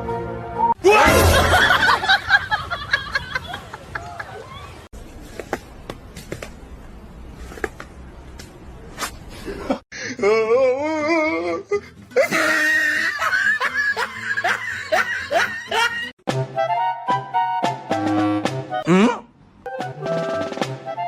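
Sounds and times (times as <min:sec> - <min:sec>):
music: 0:00.0 - 0:00.8, 0:11.2 - 0:18.9, 0:19.7 - 0:21.0
loud laughter: 0:00.8 - 0:04.6, 0:12.1 - 0:16.1.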